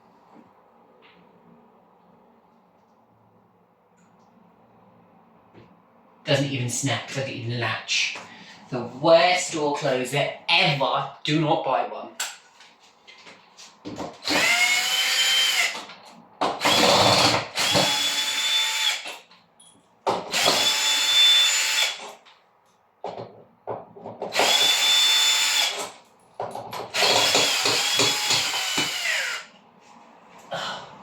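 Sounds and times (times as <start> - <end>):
cordless drill motor whine: 14.2 - 15.8, 16.6 - 19.1, 20.3 - 22.0, 24.4 - 25.8, 27.0 - 29.5.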